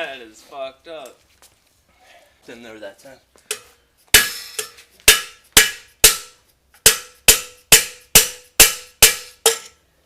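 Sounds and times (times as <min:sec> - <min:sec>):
hammer striking steel bar: 0:03.5 - 0:09.8.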